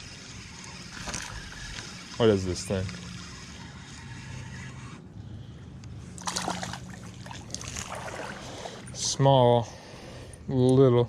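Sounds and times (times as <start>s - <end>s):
water splashes: 6.2s - 8.9s
creek water trickling: 6.2s - 9.0s.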